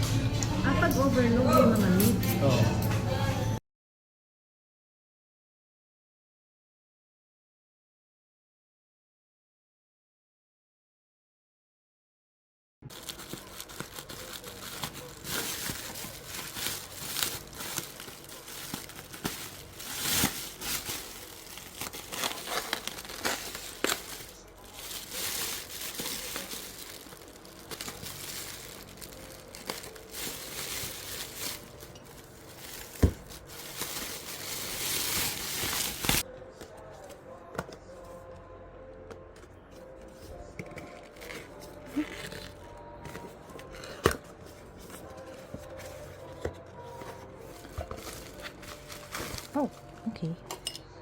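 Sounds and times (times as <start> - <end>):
wrapping rustling and crackling: 12.9 - 36.2, 44.7 - 50.2.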